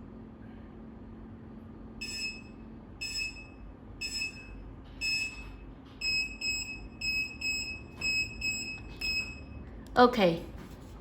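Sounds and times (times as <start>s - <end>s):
countdown buzzer beeping: 2.0s - 9.5s.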